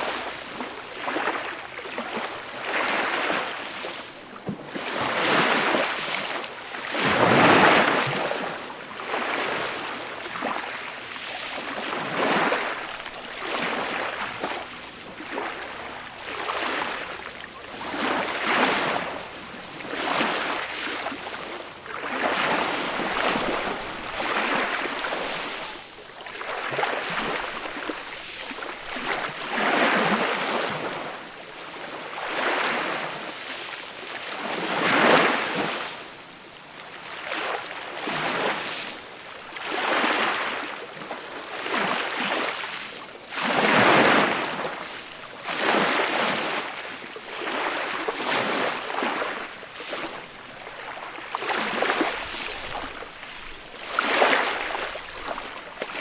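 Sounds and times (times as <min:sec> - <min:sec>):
sea waves breaking on a beach: 0:00.0 - 0:56.0.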